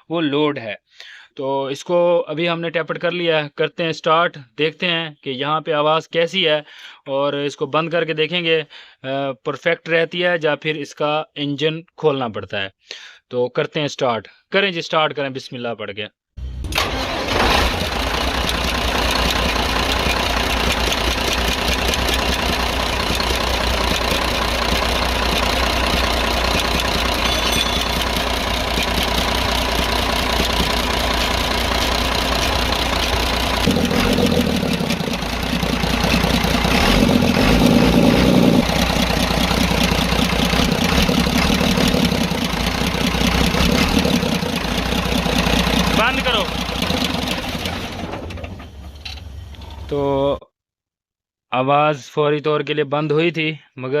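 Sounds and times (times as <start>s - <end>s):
diesel truck engine idling: 17.7s - 49.9s.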